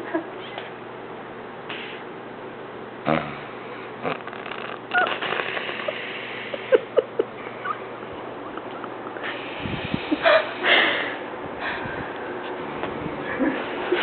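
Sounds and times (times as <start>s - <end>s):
short snuffles: 1.7s - 2.0s
loud rough snore: 3.0s - 5.8s.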